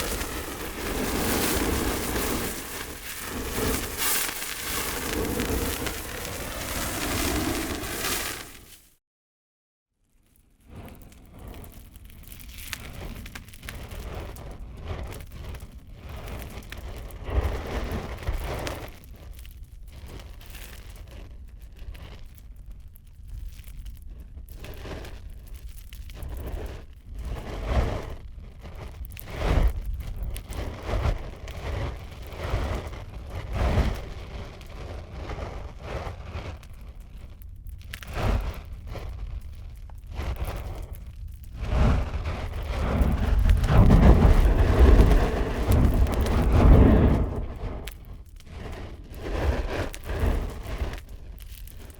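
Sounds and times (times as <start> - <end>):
fire crackling and popping: 0.0 - 8.9, 10.6 - 51.9
flames rumbling: 0.0 - 8.9, 10.5 - 51.9
low fire roar: 0.0 - 8.9, 10.7 - 22.1, 23.6 - 51.9.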